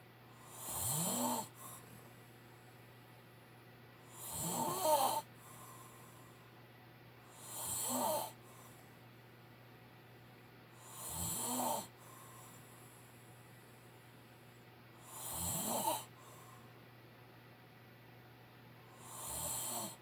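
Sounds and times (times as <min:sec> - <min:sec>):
man snoring: 0:00.4 - 0:01.8, 0:04.1 - 0:05.3, 0:07.3 - 0:08.4, 0:10.8 - 0:11.9, 0:15.0 - 0:16.1, 0:19.0 - 0:20.0.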